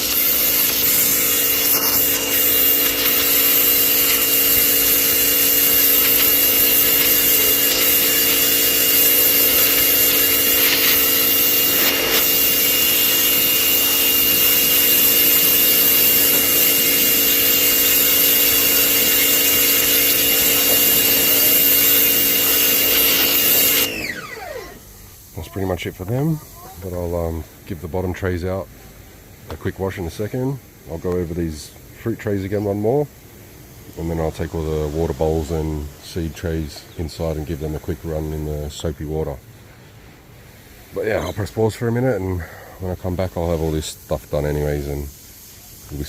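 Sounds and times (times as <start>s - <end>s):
pressure washer motor whine: 0.0s - 26.3s
water jet hissing: 0.0s - 46.0s.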